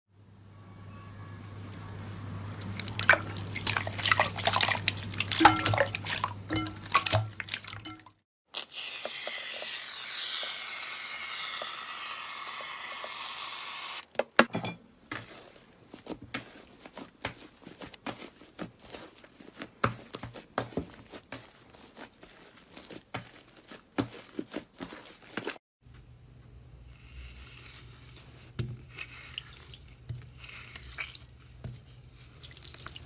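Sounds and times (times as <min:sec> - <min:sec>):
slime fizzy crackle: 0:32.2 - 0:33.0.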